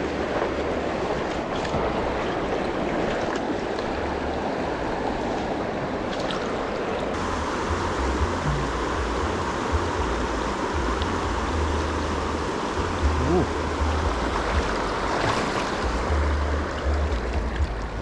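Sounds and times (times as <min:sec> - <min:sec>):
river rushing over stones: 0:00.0 - 0:18.0
low rumbling on microphone: 0:07.2 - 0:18.0.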